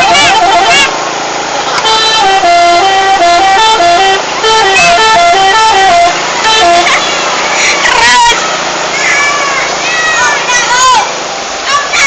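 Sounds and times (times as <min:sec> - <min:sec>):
musical bus horn tune: 0:00.0 - 0:01.1, 0:01.7 - 0:08.8.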